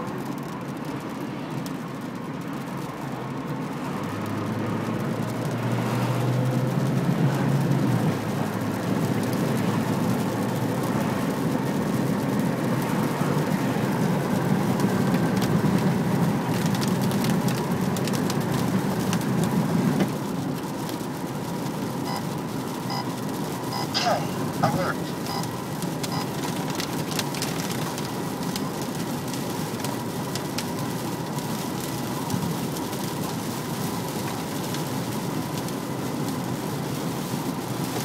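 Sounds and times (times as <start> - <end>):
car road and engine noise: 0.0 - 38.0.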